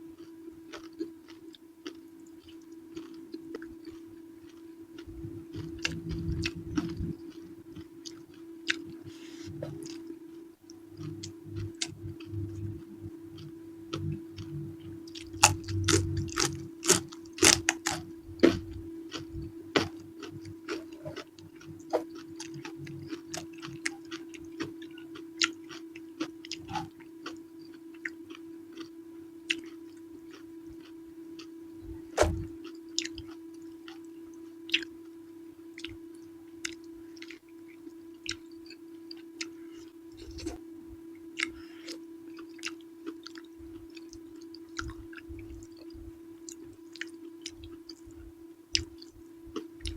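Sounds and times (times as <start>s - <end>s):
steady low hum: 0.0s - 49.9s
chewing and wet mouth clicks: 15.1s - 28.9s, 32.6s - 34.1s, 34.7s - 34.9s, 35.8s - 39.6s, 41.4s - 49.9s.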